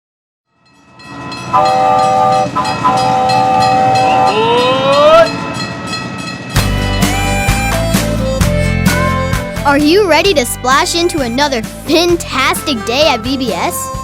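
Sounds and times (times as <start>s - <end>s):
music: 0.5s - 14.0s
train horn blasts: 1.5s - 5.3s
rising whistle: 1.5s - 5.4s.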